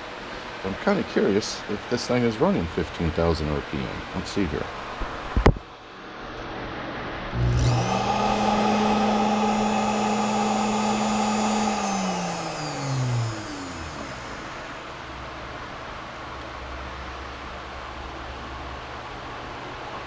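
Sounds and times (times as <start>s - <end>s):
rotary tool motor whine: 7.4s - 14.9s.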